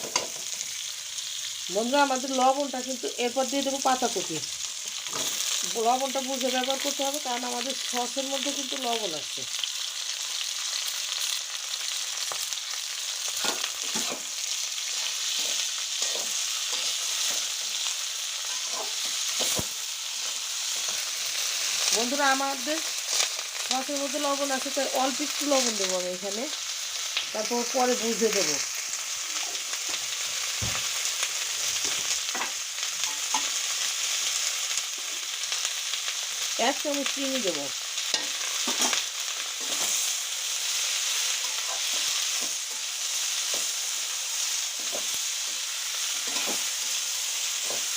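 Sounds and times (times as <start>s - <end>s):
spoon scraping and knocking pan: 0.0s - 0.5s, 13.4s - 14.3s, 14.9s - 17.5s, 18.4s - 21.0s, 46.2s - 46.7s
vegetables sizzling in hot oil: 0.0s - 47.9s.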